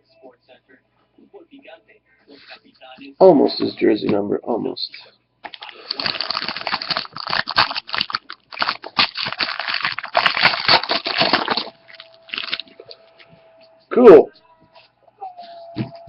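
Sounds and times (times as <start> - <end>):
card packaging crinkling: 5.5 - 12.9.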